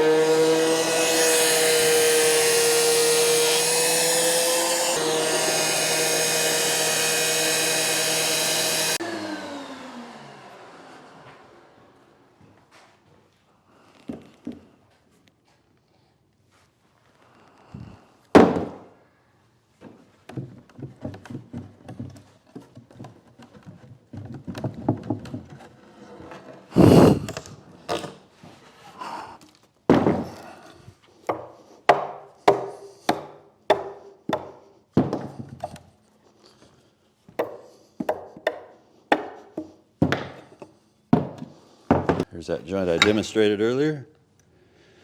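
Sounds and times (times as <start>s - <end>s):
wood knocking on wood: 19.8s - 25.6s.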